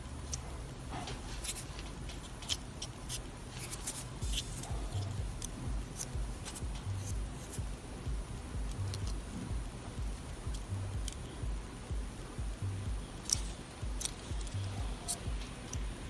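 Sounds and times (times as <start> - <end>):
quiet background music: 0.0 - 16.0.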